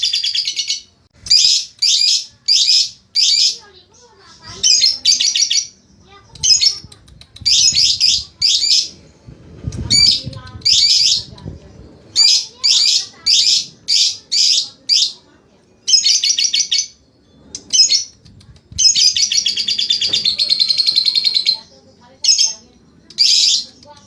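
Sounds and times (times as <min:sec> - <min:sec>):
lovebird chattering: 0:09.8 - 0:15.2, 0:15.8 - 0:24.0.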